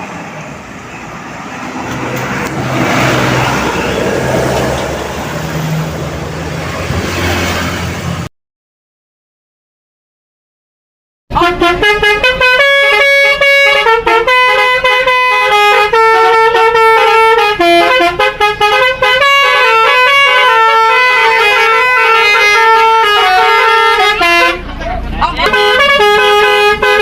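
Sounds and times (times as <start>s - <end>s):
musical bus air horn tune: 11.3s - 27.0s.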